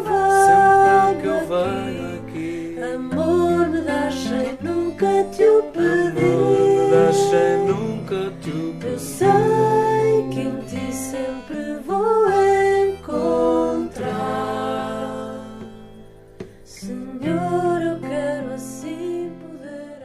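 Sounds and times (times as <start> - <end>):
person singing: 0.0 - 16.0, 16.7 - 20.0
acoustic guitar strumming: 0.0 - 20.0.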